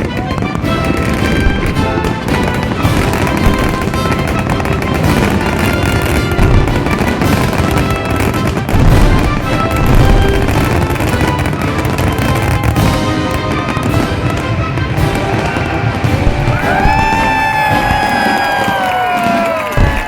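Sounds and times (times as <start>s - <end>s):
fireworks booming: 0.0s - 20.0s
music: 0.0s - 20.0s.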